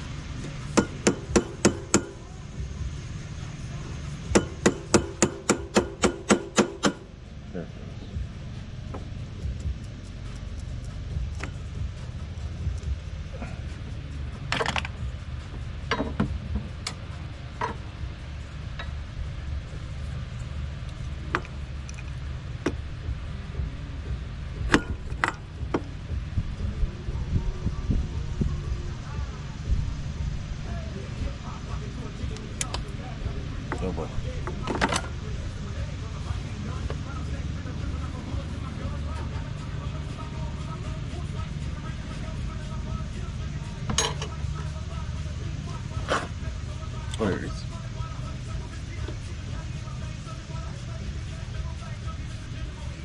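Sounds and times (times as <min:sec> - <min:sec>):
steady low hum: 0:00.0 - 0:53.0
hammer tapping on metal: 0:00.7 - 0:02.2, 0:04.3 - 0:07.1.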